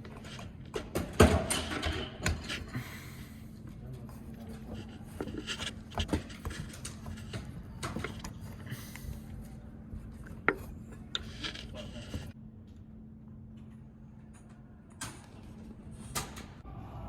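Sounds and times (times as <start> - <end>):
hand tools clinking and scraping: 10.2 - 12.4.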